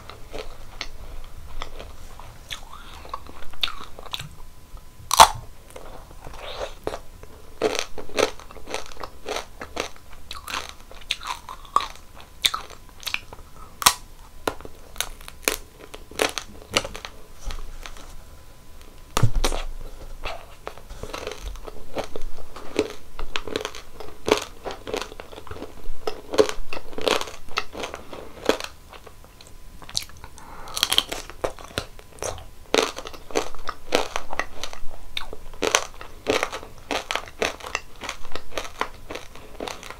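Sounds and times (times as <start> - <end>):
crunchy ice cream chewing: 0.0 - 4.4, 5.1 - 18.2, 18.8 - 39.9
low thud: 19.2 - 19.6.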